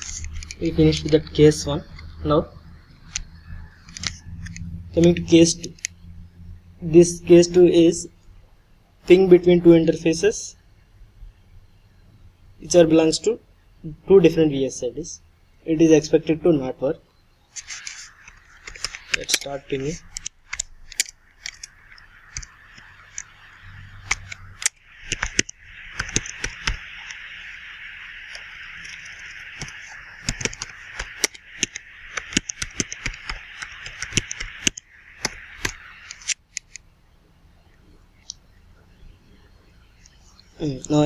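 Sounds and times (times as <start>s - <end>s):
steady hiss: 0.0s - 41.0s
keyboard typing: 17.6s - 36.8s.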